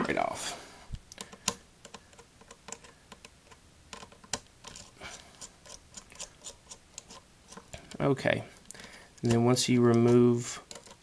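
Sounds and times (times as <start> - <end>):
screwdriver clicking on plastic: 9.2 - 11.0.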